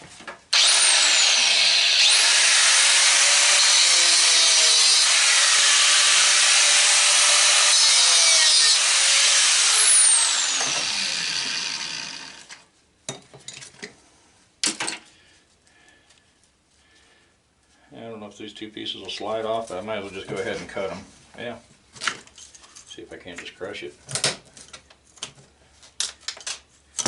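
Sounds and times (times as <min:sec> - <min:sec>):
power tool cutting: 0:00.5 - 0:12.6.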